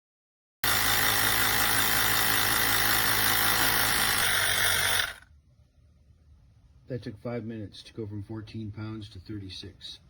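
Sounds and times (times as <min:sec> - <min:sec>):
air compressor whirring buzz: 0:00.6 - 0:05.2.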